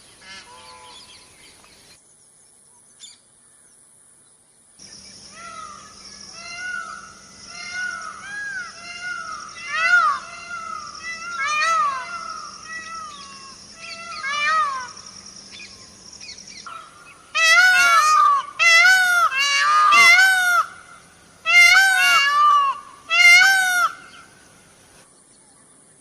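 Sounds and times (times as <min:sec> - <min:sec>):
peacock wailing calls: 0:05.3 - 0:24.7.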